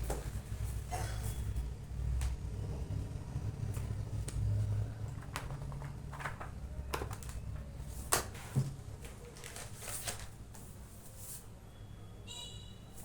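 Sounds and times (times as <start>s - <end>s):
packaging rustling and tapping: 5.1s - 10.7s.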